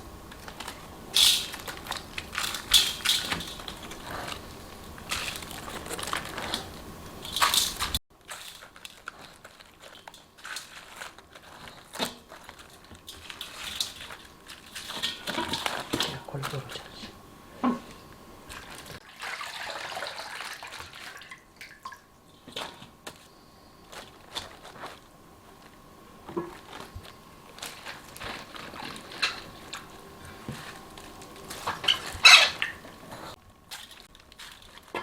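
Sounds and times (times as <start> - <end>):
handling noise: 0.0 - 19.0, 22.5 - 35.0
water sloshing and dripping: 18.5 - 22.8.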